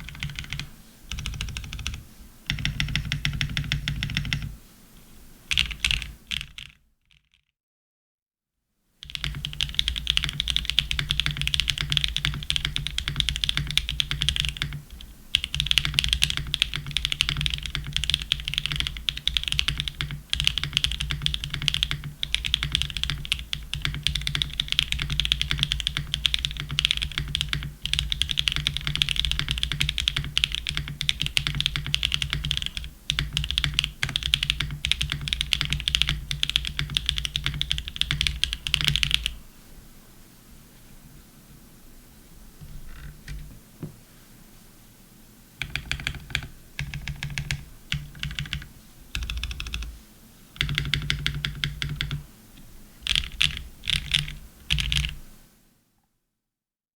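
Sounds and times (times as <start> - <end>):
fast mechanical keyboard typing: 0.0 - 4.5, 5.5 - 7.3, 9.0 - 39.4, 45.6 - 49.9, 50.6 - 52.3, 53.0 - 55.2.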